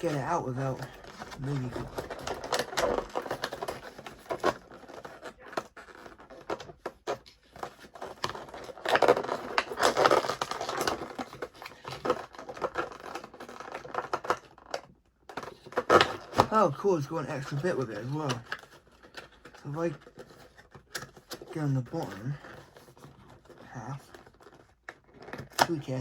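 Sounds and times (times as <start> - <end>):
cardboard packaging rustling: 0.0 - 26.0.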